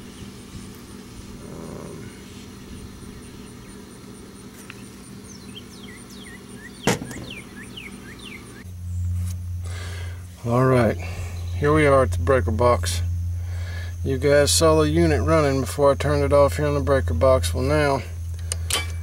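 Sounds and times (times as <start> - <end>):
air conditioner unit humming: 0.0 - 19.0
bird chirping: 4.6 - 9.1, 11.0 - 12.0
sharp knock: 6.9 - 7.4.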